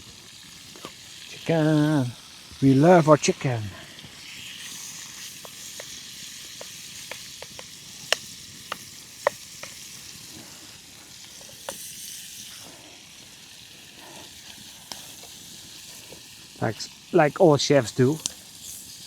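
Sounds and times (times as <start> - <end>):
chicken sizzling in a pan: 0.0 - 19.0
sharp clicks and pops: 4.0 - 10.3.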